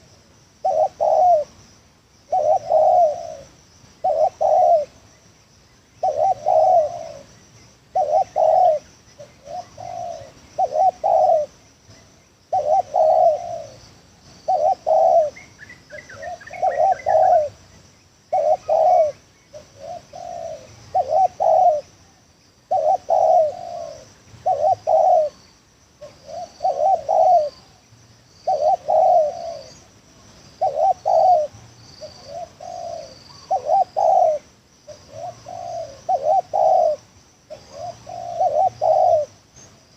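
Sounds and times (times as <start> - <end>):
dove cooing: 0.6 - 1.6, 2.3 - 5.0, 6.0 - 17.7, 18.3 - 29.9, 30.5 - 39.5
small bird twitter: 2.2 - 21.9.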